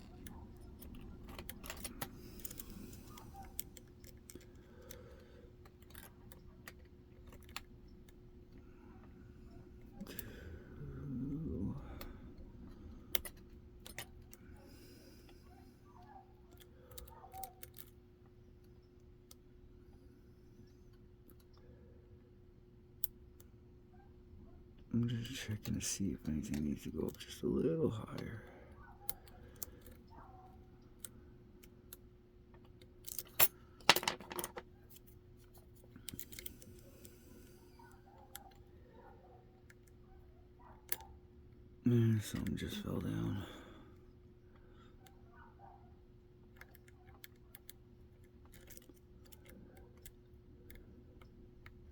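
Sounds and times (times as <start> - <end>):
lock pick clicking and scraping: 0.0 - 10.3, 16.5 - 18.0, 32.6 - 37.2, 46.5 - 51.9
lock pick clicking in lock: 46.5 - 51.8.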